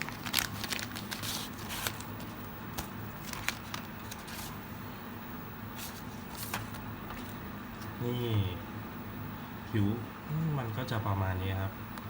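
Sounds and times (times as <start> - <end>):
packaging crackling and rustling: 0.0 - 4.7, 5.8 - 7.9.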